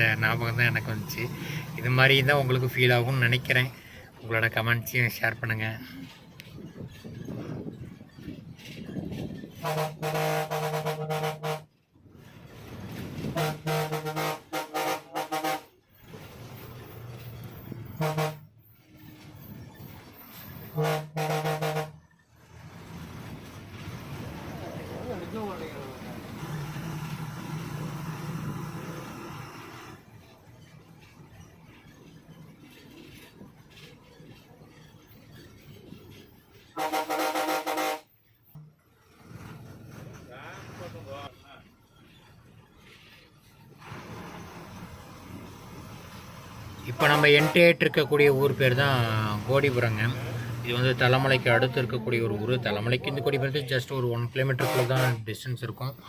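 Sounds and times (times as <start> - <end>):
bus engine running: 0.0 - 56.0
bus horn honking: 9.6 - 11.8, 13.2 - 15.9, 17.9 - 18.6, 20.7 - 22.1, 36.8 - 38.2, 46.9 - 47.9, 54.5 - 55.3.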